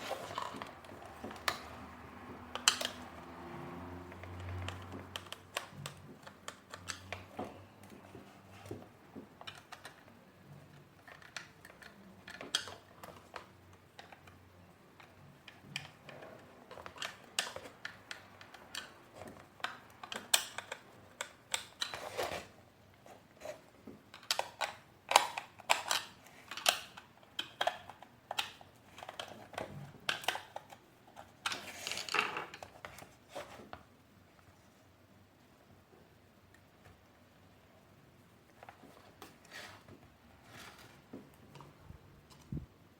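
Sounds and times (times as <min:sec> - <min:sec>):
plastic parts clicking and knocking: 0:00.0 - 0:03.2, 0:04.1 - 0:22.5, 0:23.8 - 0:33.8.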